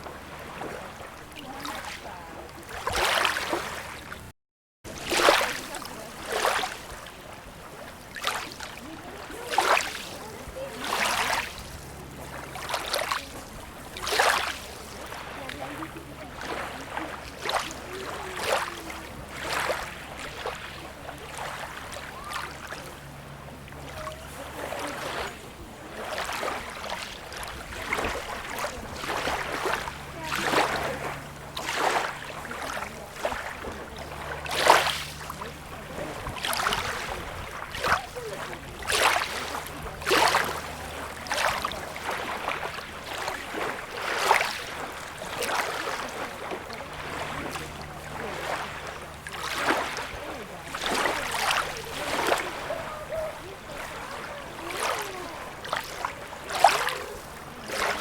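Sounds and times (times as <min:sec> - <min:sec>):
small waves lapping at shore: 0:00.0 - 0:04.3, 0:04.9 - 0:58.0.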